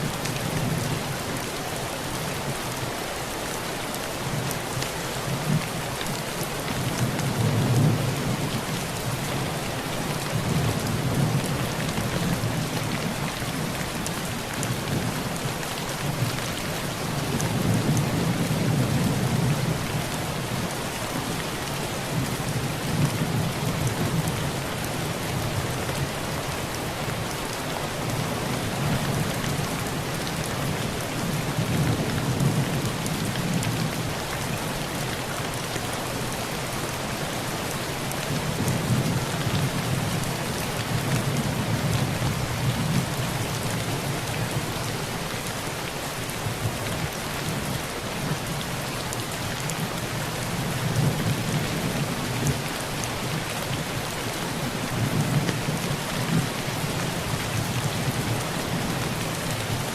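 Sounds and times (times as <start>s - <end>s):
heavy rain on a tin roof: 0.0s - 59.9s.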